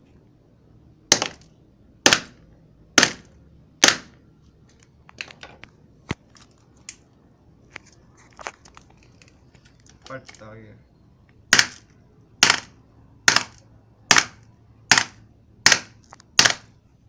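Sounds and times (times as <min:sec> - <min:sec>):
phone being smashed: 0:01.1 - 0:01.5, 0:11.5 - 0:16.7
clicks and cracks: 0:04.7 - 0:07.1, 0:07.8 - 0:10.4.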